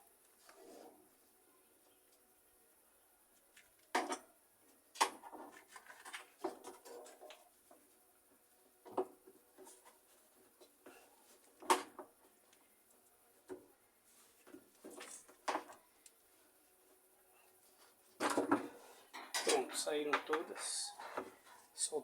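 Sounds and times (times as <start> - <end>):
hand tools knocking on machine parts: 19.1 - 21.3.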